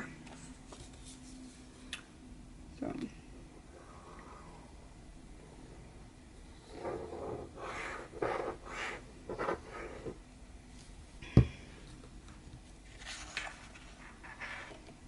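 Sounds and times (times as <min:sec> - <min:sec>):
paper rustling: 0:12.9 - 0:14.7.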